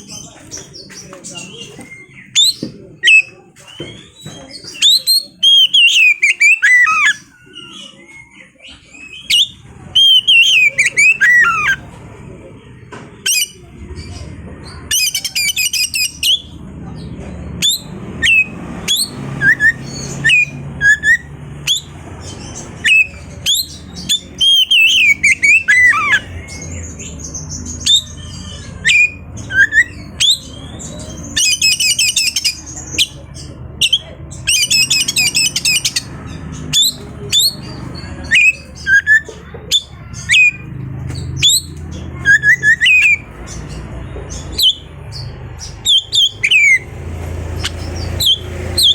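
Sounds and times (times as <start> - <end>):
bird singing whistled notes: 1.4 - 11.8, 17.6 - 21.9, 22.8 - 27.1, 27.8 - 33.2, 36.7 - 43.3, 44.3 - 48.9
bird scratchy rattling trills: 8.7 - 12.0, 17.4 - 48.9.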